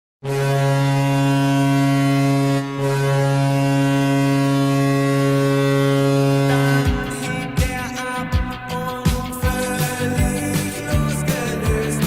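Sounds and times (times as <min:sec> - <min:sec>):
goal horn blast: 0:00.2 - 0:10.1.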